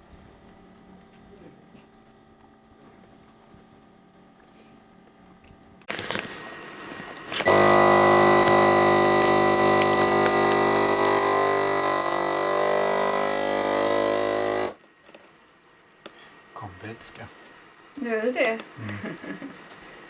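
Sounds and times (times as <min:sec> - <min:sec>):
vacuum sealer pump humming: 0:05.9 - 0:14.8.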